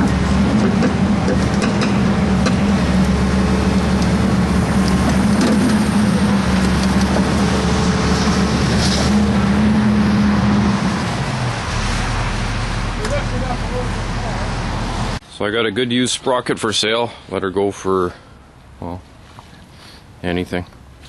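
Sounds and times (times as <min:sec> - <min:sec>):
excavator diesel engine running: 0:00.0 - 0:15.2.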